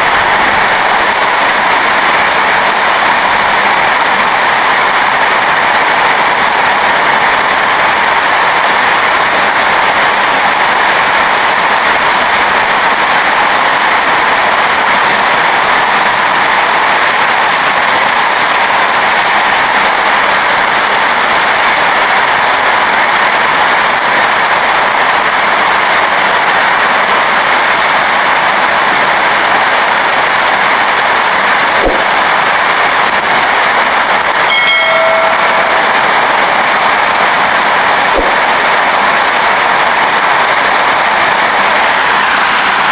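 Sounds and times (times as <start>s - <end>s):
rain falling: 0.0s - 42.9s
brief multi-tone sound: 34.4s - 36.6s.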